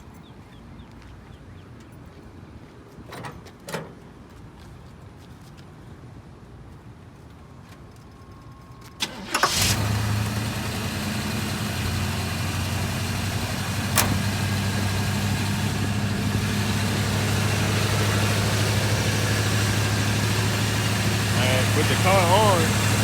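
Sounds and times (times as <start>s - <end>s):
car engine cranking and idling: 9.0s - 23.0s
sharp click: 14.0s - 14.2s.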